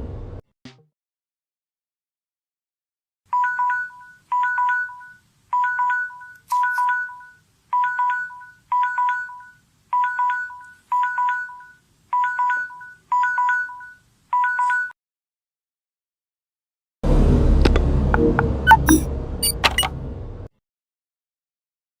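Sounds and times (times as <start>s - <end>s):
phone alarm beeps: 18.2s - 19.9s.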